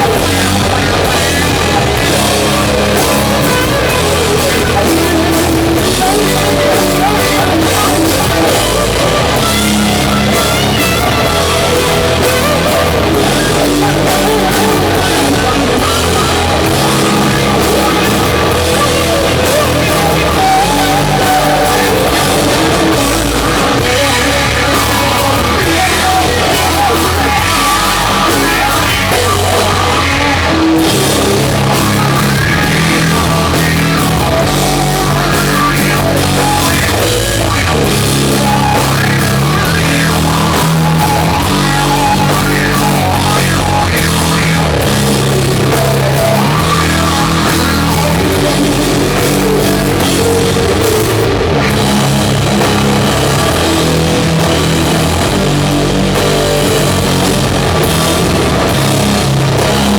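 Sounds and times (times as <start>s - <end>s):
distorted guitar and bass riff: 0.0s - 59.9s
drum kit: 0.0s - 59.9s.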